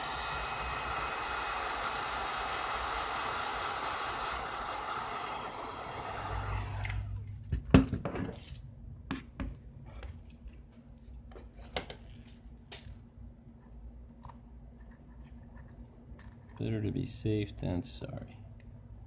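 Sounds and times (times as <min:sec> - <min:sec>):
heat gun blowing: 0:00.0 - 0:07.2.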